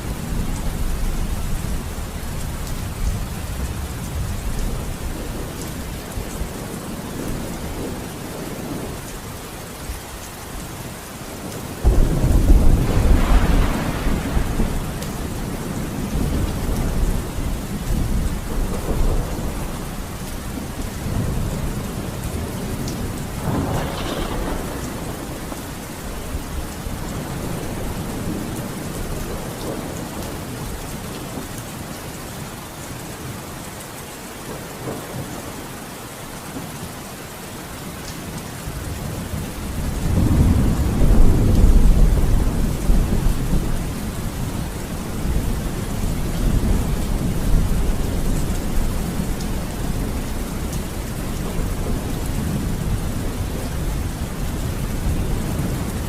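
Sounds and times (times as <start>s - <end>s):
steady rain: 0.0s - 56.0s
rolls of thunder: 11.8s - 17.2s, 23.4s - 28.6s.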